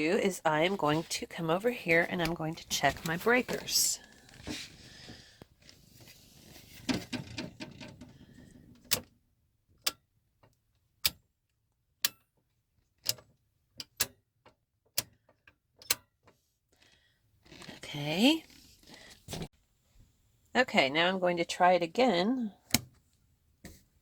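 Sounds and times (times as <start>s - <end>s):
handling rustling: 0.4s - 8.3s.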